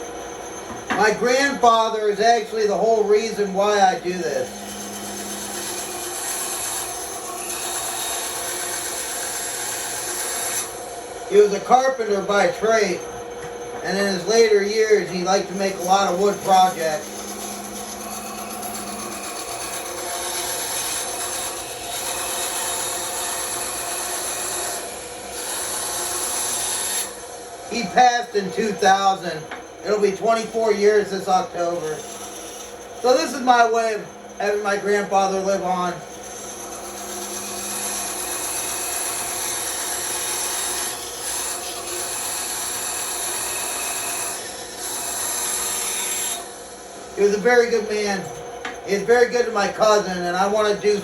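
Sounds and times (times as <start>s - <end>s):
bandsaw cutting wood: 0.0s - 51.0s.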